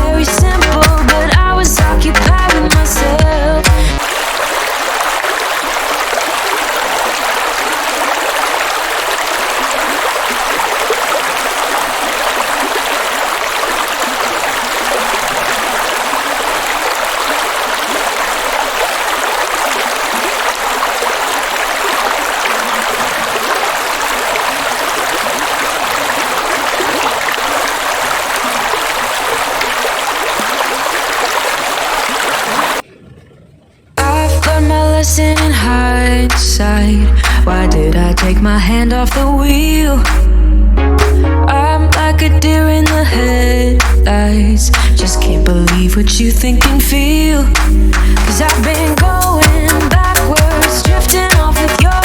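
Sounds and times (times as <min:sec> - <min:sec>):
waterfall rushing: 0:03.8 - 0:32.8.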